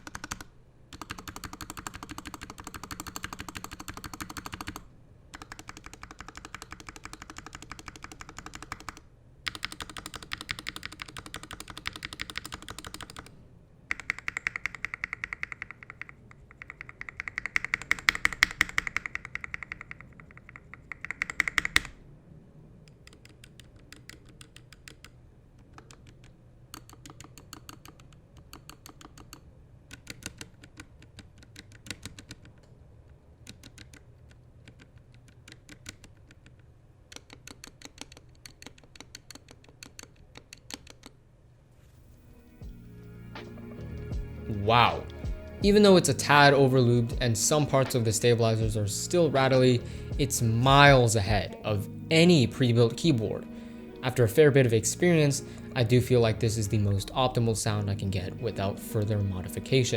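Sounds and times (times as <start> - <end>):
mechanical keyboard typing: 0.0 - 22.0, 22.9 - 41.2.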